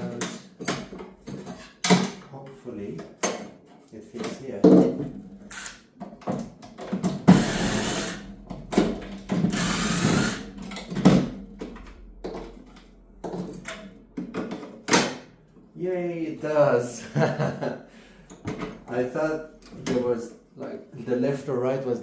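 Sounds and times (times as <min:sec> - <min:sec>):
power drill driving screws: 0:05.4 - 0:05.8, 0:07.3 - 0:08.3, 0:09.4 - 0:10.5.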